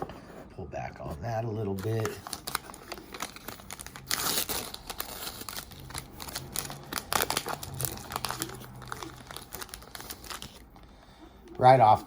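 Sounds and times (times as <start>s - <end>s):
wrapper tearing and crinkling: 1.8s - 10.7s.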